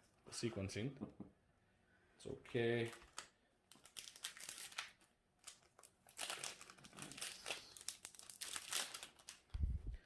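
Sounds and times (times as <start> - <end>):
plastic packaging crinkling: 2.8 - 9.7.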